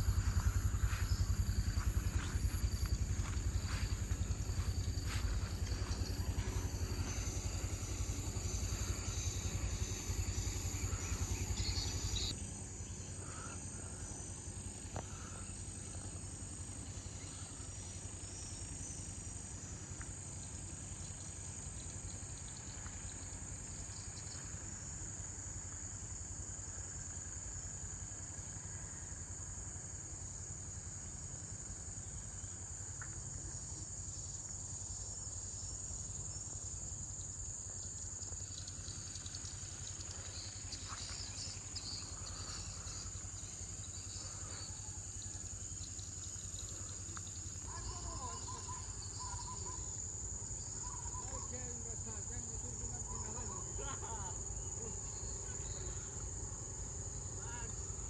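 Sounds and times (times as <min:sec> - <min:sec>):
low rumble: 0:00.0 - 0:12.3
insects droning: 0:00.0 - 0:58.0.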